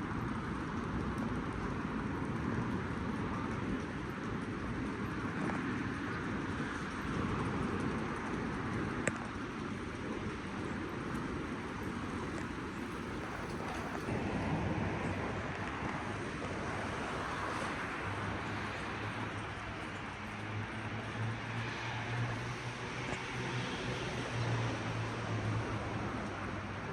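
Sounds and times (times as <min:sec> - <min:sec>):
passing cars and road hum: 0:11.9 - 0:26.9.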